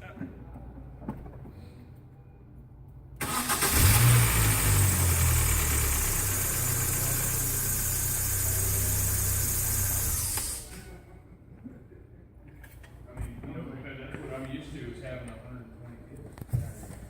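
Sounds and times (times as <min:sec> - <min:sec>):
engine starter cranking: 0:03.2 - 0:10.8
car engine starting and idling: 0:03.2 - 0:10.9.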